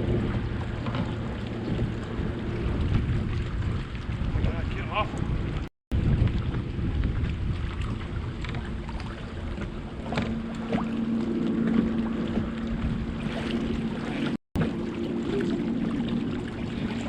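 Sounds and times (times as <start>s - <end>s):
wind buffeting microphone: 0.0s - 17.0s
steady low hum: 7.6s - 17.0s.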